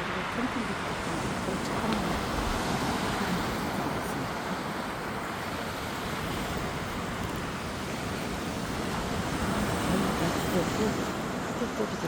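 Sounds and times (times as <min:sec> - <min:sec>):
surf washing onto beach: 0:00.0 - 0:12.0
wind rumbling on microphone: 0:00.0 - 0:12.0.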